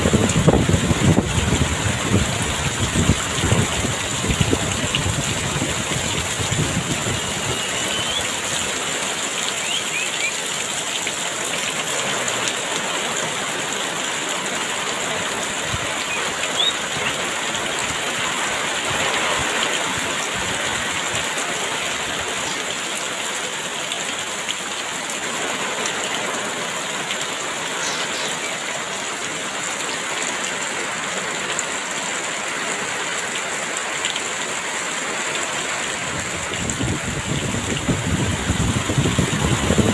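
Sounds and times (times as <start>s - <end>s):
heavy rain: 0.0s - 39.9s
faint bird chirps: 9.6s - 10.4s, 16.0s - 17.2s, 22.3s - 22.8s, 27.7s - 29.1s.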